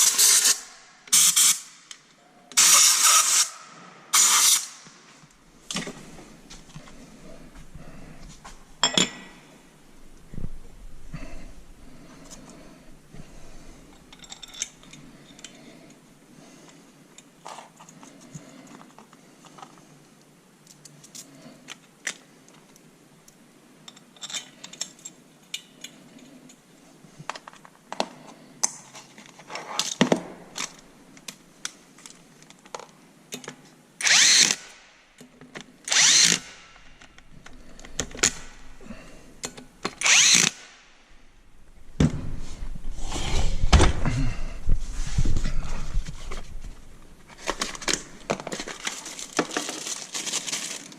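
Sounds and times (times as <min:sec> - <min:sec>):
tools and metal parts clicking: 0:14.0 - 0:15.6, 0:23.8 - 0:26.6.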